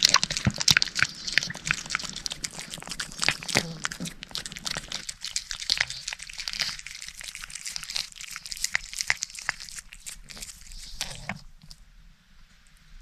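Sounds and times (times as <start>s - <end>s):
cat eating: 0.0s - 11.9s.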